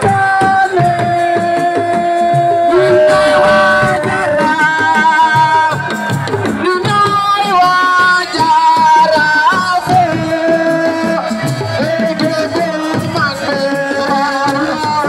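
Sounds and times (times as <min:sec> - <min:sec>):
hand drums beating: 0:00.0 - 0:15.0.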